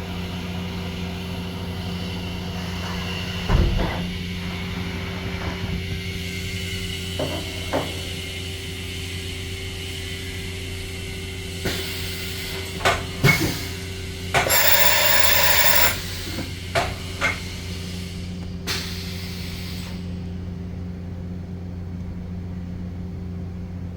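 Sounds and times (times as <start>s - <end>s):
machine humming: 14.5s - 16.1s.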